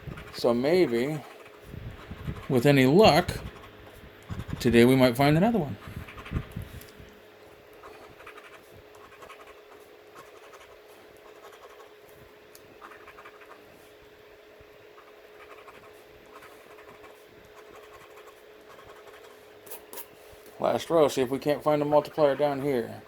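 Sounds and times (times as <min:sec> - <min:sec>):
scratching lottery ticket: 0:00.0 - 0:06.6, 0:07.8 - 0:12.0, 0:12.8 - 0:13.9, 0:15.0 - 0:20.1, 0:20.7 - 0:23.0
faint hum: 0:00.0 - 0:23.0.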